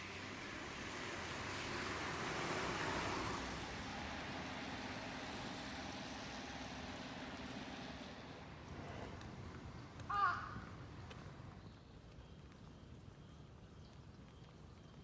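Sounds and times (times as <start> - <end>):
car tyres hissing on wet road: 0.0 - 5.4
rain and street noise: 0.0 - 15.0.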